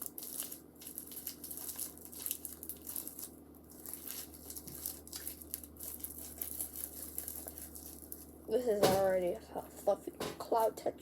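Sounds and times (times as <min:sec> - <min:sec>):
slime crackling and tearing: 0:00.0 - 0:08.4.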